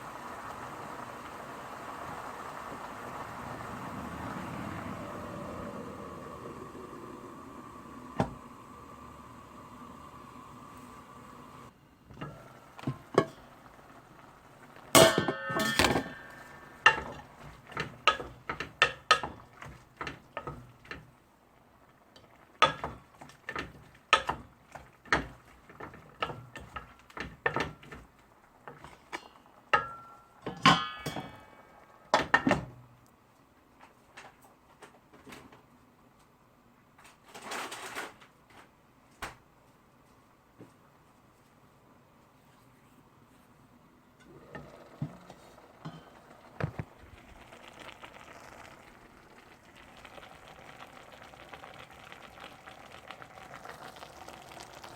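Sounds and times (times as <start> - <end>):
dishes and pots clattering: 12.1 - 13.6, 14.9 - 21.0, 22.6 - 28.1, 28.7 - 32.8, 44.2 - 46.8
ringing metal clangs: 15.0 - 16.4, 29.2 - 31.6.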